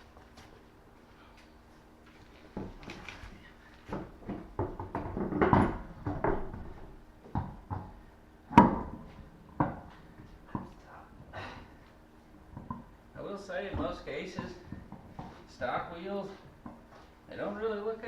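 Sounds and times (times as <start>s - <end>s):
objects knocking on hard floor: 3.9s - 10.7s.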